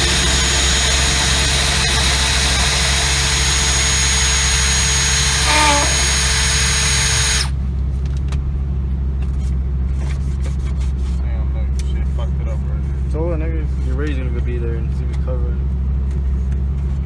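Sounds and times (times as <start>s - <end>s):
rotary tool grinding: 0.0s - 7.6s.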